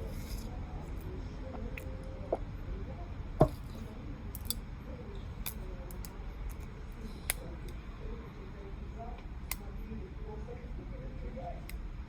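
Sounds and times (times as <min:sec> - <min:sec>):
low steady hum: 0:00.0 - 0:12.0
pen knocking on desk: 0:03.4 - 0:03.6.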